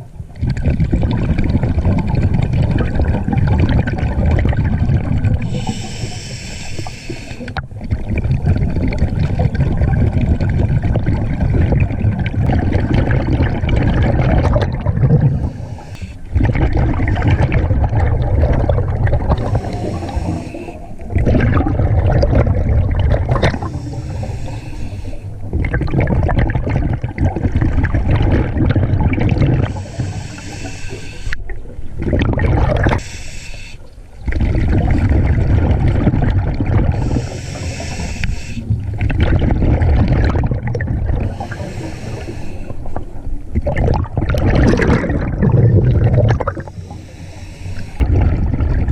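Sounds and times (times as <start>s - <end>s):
bubbling exhalations: 0.4s - 30.6s, 31.3s - 33.0s, 34.2s - 48.9s
regulator hissing inhalations: 5.5s - 7.5s, 15.3s - 16.3s, 19.4s - 21.0s, 23.5s - 25.4s, 29.7s - 31.4s, 33.0s - 34.0s, 37.0s - 38.8s, 41.3s - 42.9s, 46.6s - 48.0s.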